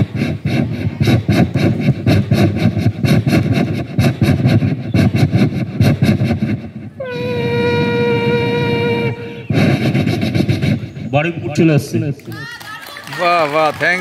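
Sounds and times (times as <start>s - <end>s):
man imitating steam train chuffing: 0.0s - 11.6s
man imitating train horn: 7.0s - 9.6s.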